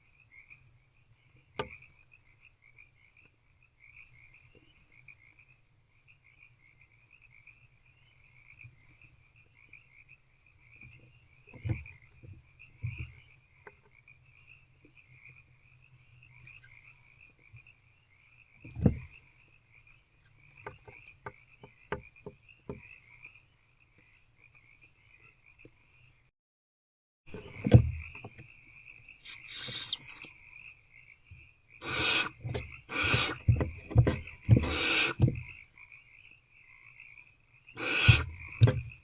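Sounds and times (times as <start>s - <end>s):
frog chorus trilling: 0.0s - 26.2s, 27.4s - 39.0s
owls hissing screeches: 29.2s - 30.3s, 31.8s - 33.5s, 34.6s - 35.2s, 37.8s - 38.4s
knocks and scratching: 31.8s - 35.5s, 37.8s - 39.0s.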